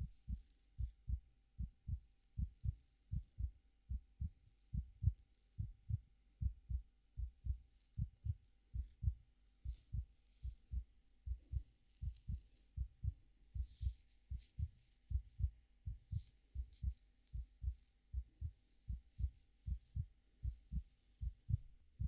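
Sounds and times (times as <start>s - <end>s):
heartbeat thumps: 0.0s - 22.0s
fingers rustling hair: 13.5s - 22.0s.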